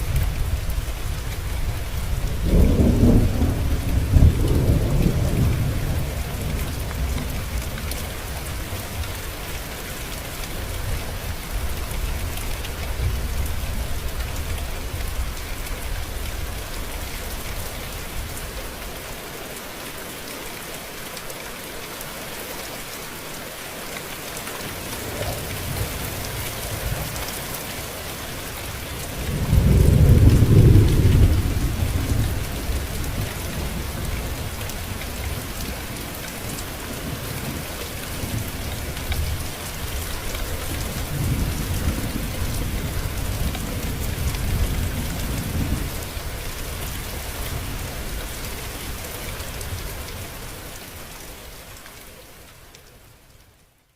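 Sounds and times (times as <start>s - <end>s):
heavy rain: 0.0s - 53.9s
rolling thunder: 2.2s - 7.2s, 29.3s - 34.5s.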